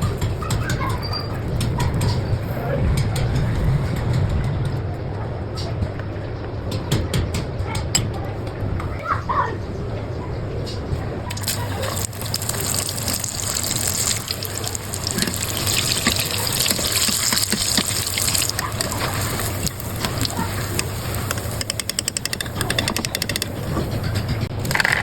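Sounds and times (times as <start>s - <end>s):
hot oil sizzling and crackling: 11.3s - 23.7s.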